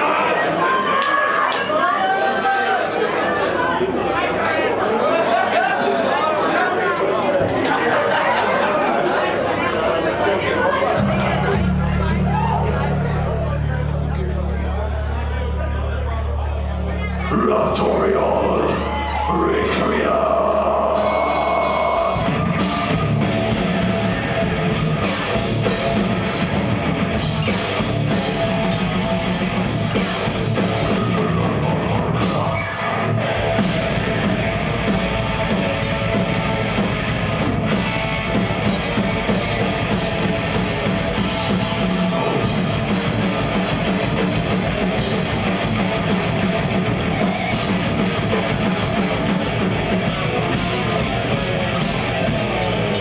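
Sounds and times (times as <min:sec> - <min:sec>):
heavy metal band playing: 0:10.6 - 0:53.0
distorted electric guitars: 0:11.0 - 0:53.0
pounding drum kit: 0:19.6 - 0:53.0.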